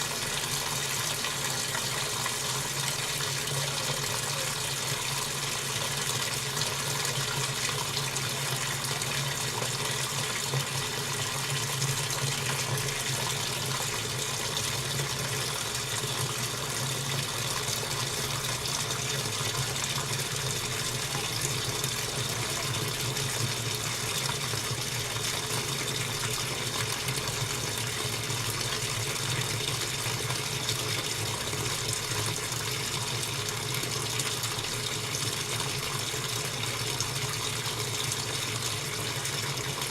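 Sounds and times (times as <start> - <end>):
water rushing: 0.0 - 14.5
washing machine running: 0.0 - 39.9.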